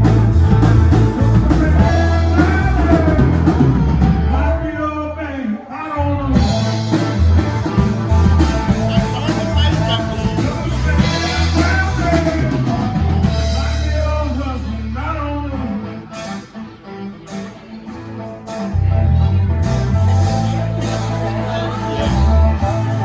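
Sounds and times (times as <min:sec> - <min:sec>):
drum kit: 0:00.0 - 0:04.4, 0:06.4 - 0:14.2, 0:19.6 - 0:23.0
electric guitar: 0:00.0 - 0:04.8, 0:06.0 - 0:23.0
bass guitar: 0:00.0 - 0:23.0
person singing: 0:00.9 - 0:16.4.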